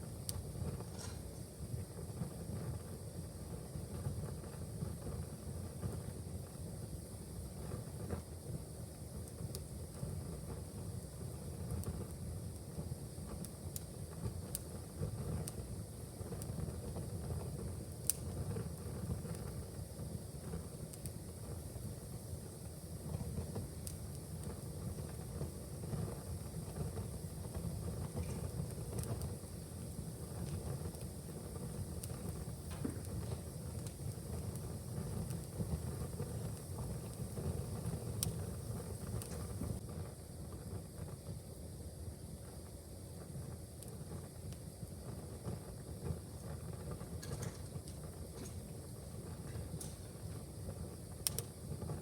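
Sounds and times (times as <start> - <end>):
fire crackling and popping: 0.0 - 52.0
low fire rumble: 0.0 - 52.0.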